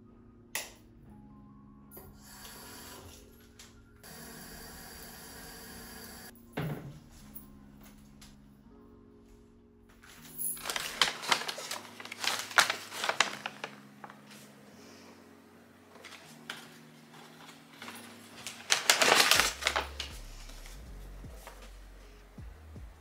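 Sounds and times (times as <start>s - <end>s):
small household items clattering: 10.0s - 14.4s, 16.0s - 20.2s.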